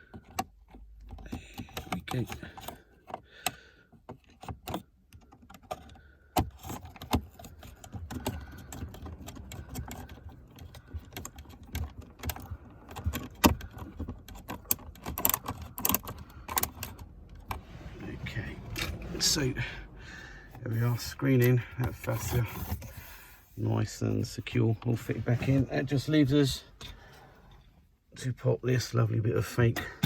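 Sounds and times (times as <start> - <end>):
plastic panels clicking and knocking: 0.0 - 17.6.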